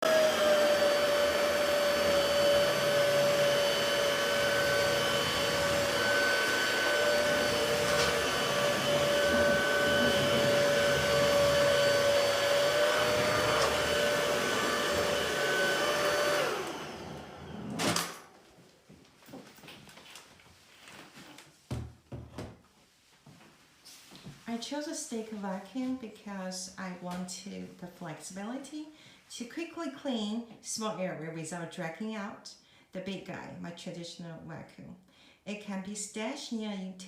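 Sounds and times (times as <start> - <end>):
vacuum cleaner whining: 0.0 - 18.6.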